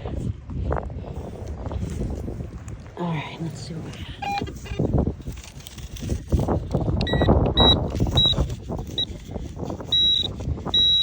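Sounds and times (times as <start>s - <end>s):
digging in hard dry dirt: 1.0s - 11.0s
metal detector short high beeps: 7.0s - 9.1s, 9.9s - 11.0s.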